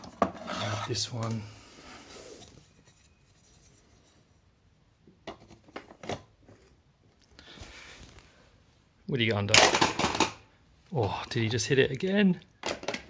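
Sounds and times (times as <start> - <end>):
soft rubbing: 0.5 - 4.5.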